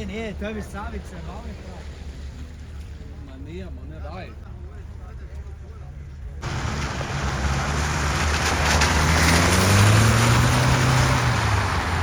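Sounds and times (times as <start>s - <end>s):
engine revving under load: 6.4s - 12.0s
loud rushing noise: 6.4s - 12.0s.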